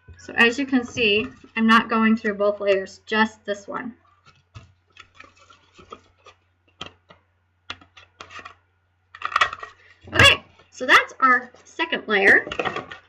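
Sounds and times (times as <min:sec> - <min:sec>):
cardstock rustling and tapping: 0:04.1 - 0:08.6.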